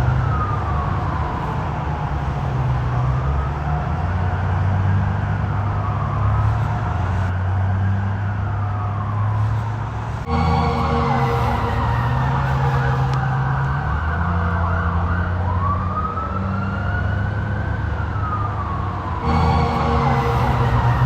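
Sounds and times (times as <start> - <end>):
police siren wailing: 0.0 - 21.0
low rumble: 10.2 - 13.6, 19.1 - 21.0.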